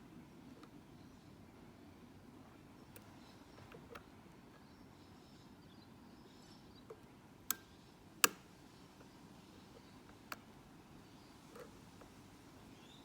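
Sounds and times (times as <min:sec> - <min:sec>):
lock pick clicking in padlock: 0:07.5 - 0:08.5.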